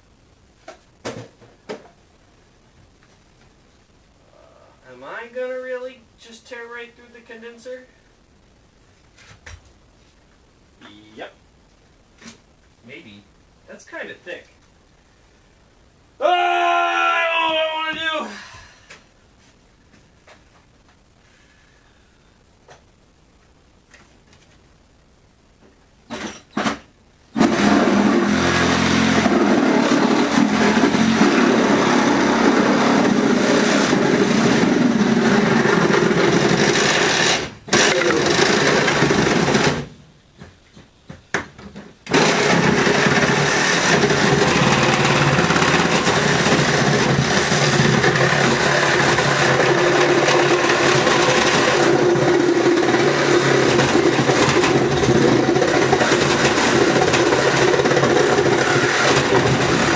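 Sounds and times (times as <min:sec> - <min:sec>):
power tool cutting metal: 0:27.4 - 0:39.8, 0:42.1 - 0:59.9.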